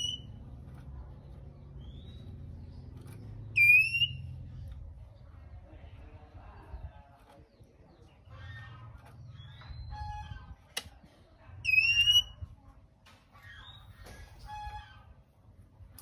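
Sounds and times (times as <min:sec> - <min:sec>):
bird harsh rasping calls: 0:00.0 - 0:00.4, 0:03.4 - 0:04.3, 0:11.7 - 0:12.3
bird whistled notes: 0:00.0 - 0:00.4, 0:03.6 - 0:04.3, 0:11.6 - 0:12.4.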